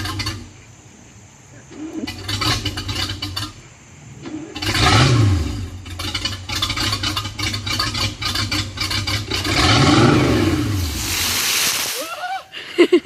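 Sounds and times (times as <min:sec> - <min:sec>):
boat engine revving: 0:01.6 - 0:11.6.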